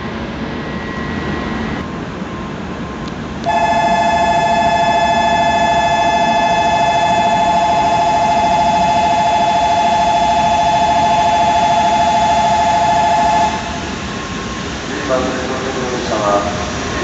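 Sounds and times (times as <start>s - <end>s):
platform warning bell ringing: 3.4s - 14.0s.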